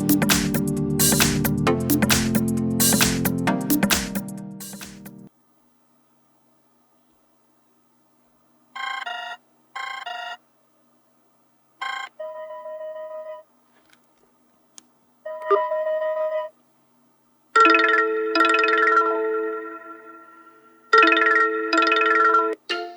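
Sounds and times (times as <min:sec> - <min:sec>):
smartphone ringtones: 0:11.8 - 0:13.4, 0:15.3 - 0:16.5, 0:17.6 - 0:22.9.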